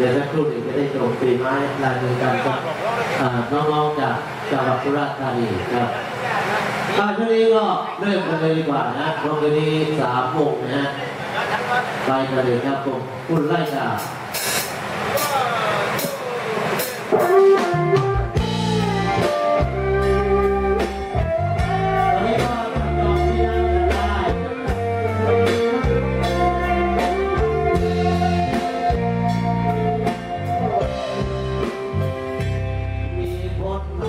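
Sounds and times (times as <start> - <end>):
drum kit: 14.0 - 33.6
bass guitar: 17.1 - 34.0
lead guitar melody: 17.1 - 34.0.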